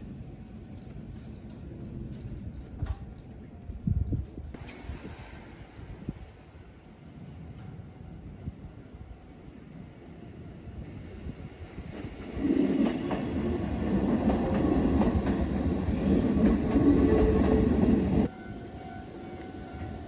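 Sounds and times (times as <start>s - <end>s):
train wheels clacking: 12.0s - 18.3s.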